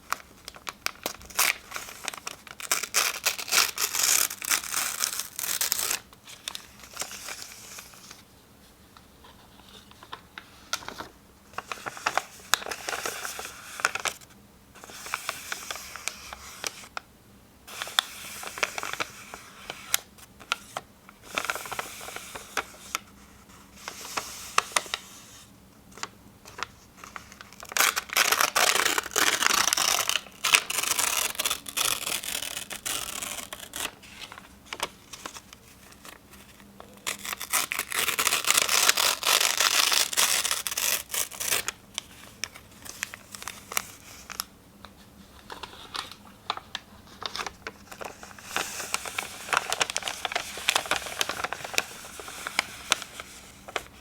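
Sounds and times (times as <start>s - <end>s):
paper crinkling: 0.0s - 8.2s, 9.2s - 17.0s, 17.7s - 25.3s, 26.0s - 54.0s
paper tearing: 1.2s - 6.1s, 27.6s - 34.0s, 37.0s - 41.7s.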